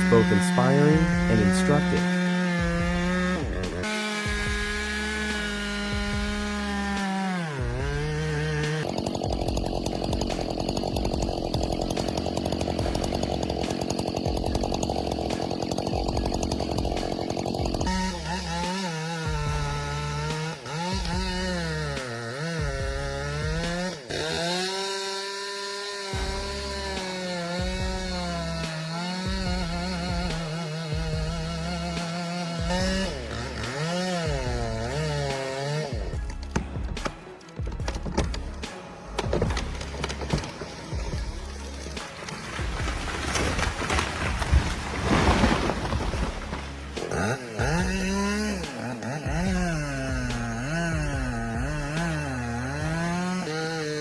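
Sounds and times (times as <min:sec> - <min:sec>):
rough noisy rushing: 0:00.0 - 0:21.3, 0:26.2 - 0:52.6
chainsaw cutting wood: 0:00.0 - 0:54.0
scattered crackles: 0:36.6 - 0:47.2.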